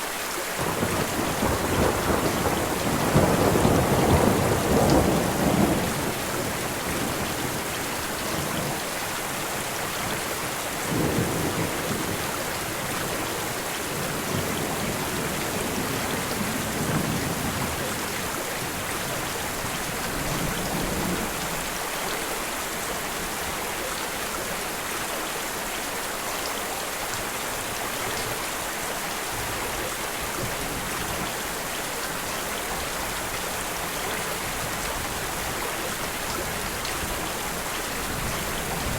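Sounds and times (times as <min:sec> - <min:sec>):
heavy rain hissing: 0:00.0 - 0:21.9
thunder rumbling: 0:00.6 - 0:07.6.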